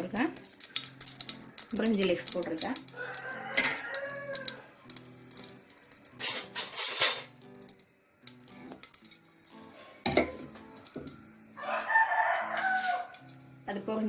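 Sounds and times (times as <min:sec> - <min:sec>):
faint background music: 0:00.0 - 0:14.0
spices sizzling in hot oil: 0:00.0 - 0:14.0
metal utensil scraping pot: 0:06.2 - 0:07.4, 0:12.4 - 0:13.4.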